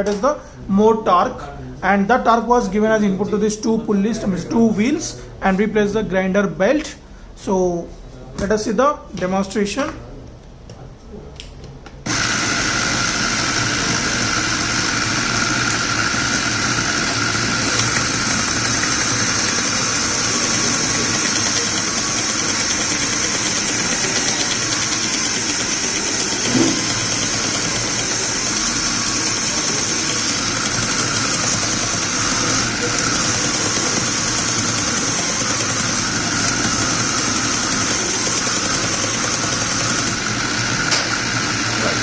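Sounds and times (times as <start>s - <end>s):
belt grinder motor running: 12.1s - 42.0s.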